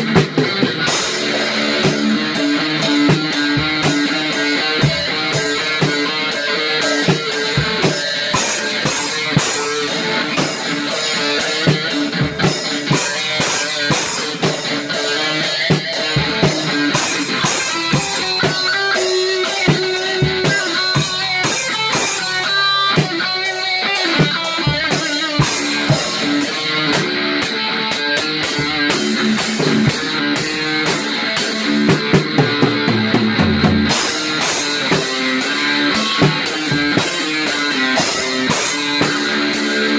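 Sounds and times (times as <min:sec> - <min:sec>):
drum kit beat: 0:00.0 - 0:39.9
strummed electric guitar: 0:00.0 - 0:39.9.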